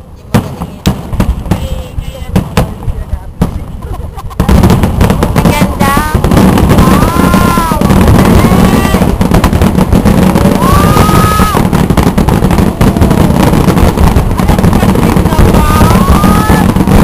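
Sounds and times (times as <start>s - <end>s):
fireworks crackling: 0.0s - 17.0s
rising firework whistles: 4.4s - 17.0s.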